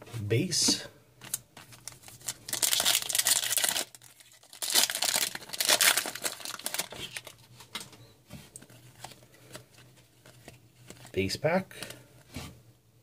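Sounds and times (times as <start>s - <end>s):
foil wrapper tearing and crinkling: 1.3s - 7.5s.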